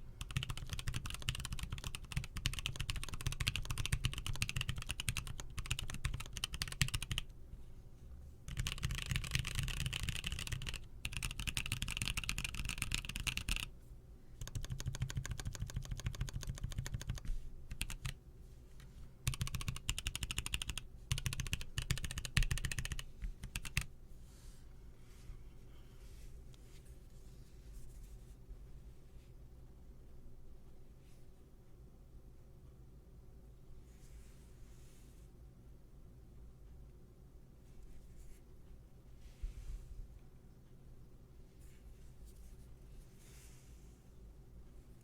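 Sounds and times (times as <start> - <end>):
mechanical keyboard typing: 0.2 - 7.3, 8.5 - 13.7, 14.4 - 18.2, 19.2 - 23.9.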